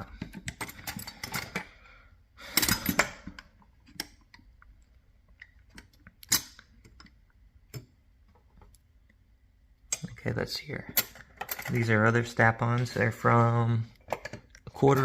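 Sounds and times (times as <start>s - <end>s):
tools clattering: 0.0s - 1.7s, 2.5s - 4.2s, 10.8s - 12.0s
metal tools clinking and rattling: 0.0s - 1.8s, 2.5s - 4.1s, 10.8s - 12.1s.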